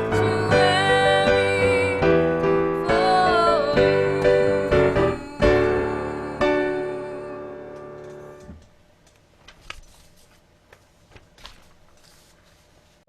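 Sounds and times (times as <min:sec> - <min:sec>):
piano chords: 0:00.0 - 0:08.6.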